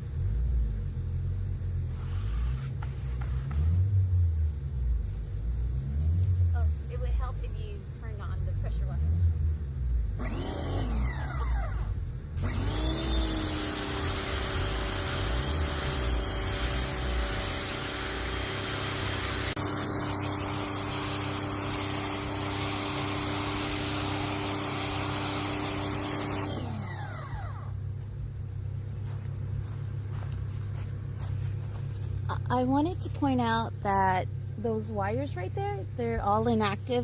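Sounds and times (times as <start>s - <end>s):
pressure washer motor whine: 10.2s - 28.1s.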